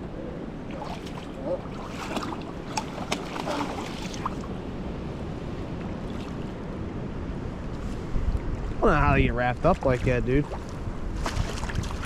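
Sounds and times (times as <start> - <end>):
wind on microphone: 0.0 - 12.0
stream water rushing: 0.5 - 4.6.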